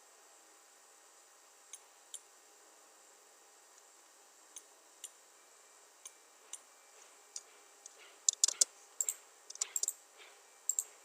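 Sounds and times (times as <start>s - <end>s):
mouse and keyboard clicks: 8.2s - 10.0s, 10.7s - 10.9s.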